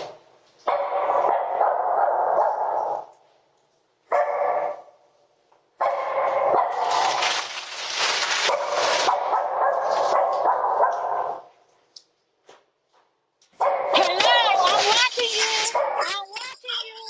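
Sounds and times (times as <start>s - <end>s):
dog barking: 0.6s - 3.1s, 4.1s - 5.0s, 5.8s - 7.2s, 8.4s - 11.5s, 13.6s - 14.7s, 15.6s - 16.2s.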